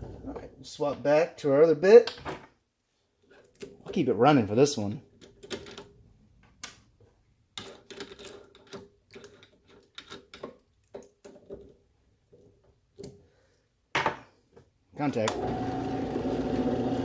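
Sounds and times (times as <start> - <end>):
tools clicking and clattering: 5.1 - 6.9, 7.6 - 11.8.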